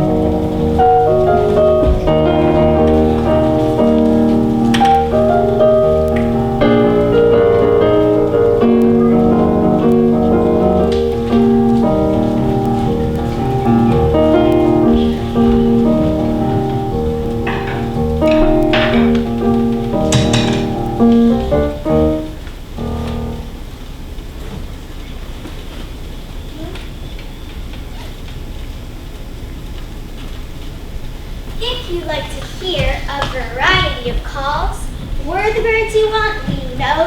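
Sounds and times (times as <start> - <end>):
piano instrumental music: 0.0 - 23.8.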